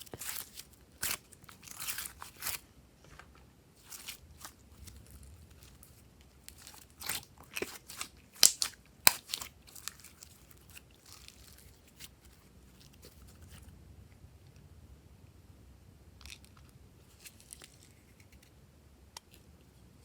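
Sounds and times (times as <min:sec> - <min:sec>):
slime popping and crackling: 0:00.0 - 0:02.6, 0:03.8 - 0:12.1.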